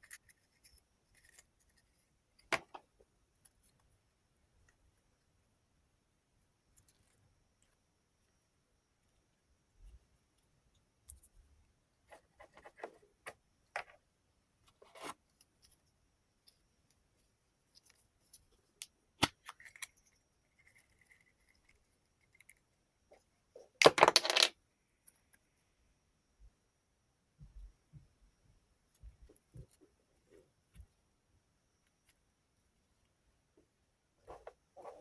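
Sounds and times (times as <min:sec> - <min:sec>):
small metal parts clinking: 0:23.8 - 0:24.5.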